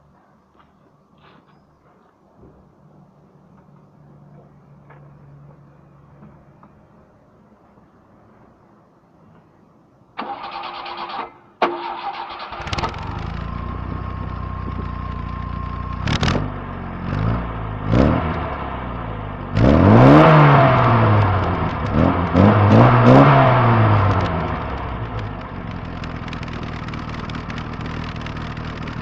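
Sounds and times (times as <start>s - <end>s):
starter cranking engine: 10.2s - 15.4s
engine revving: 11.8s - 29.0s
car engine idling: 12.0s - 19.6s, 20.4s - 29.0s.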